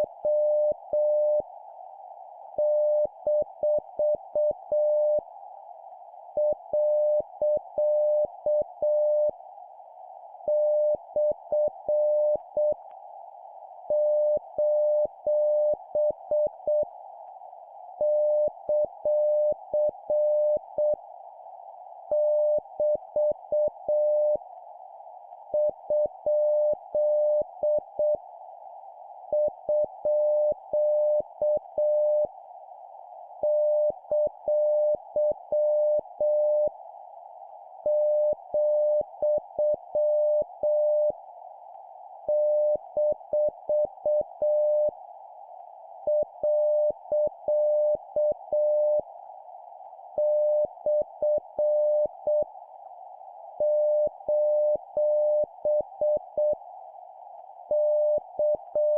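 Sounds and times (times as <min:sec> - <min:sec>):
morse code beeps: 0:50.2 - 0:52.1.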